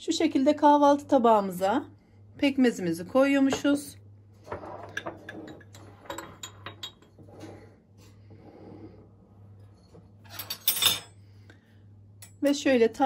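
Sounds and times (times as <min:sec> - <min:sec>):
utensils clinking on dishes: 0:04.5 - 0:07.3, 0:10.0 - 0:11.2
spoon scraping plate: 0:04.5 - 0:07.7.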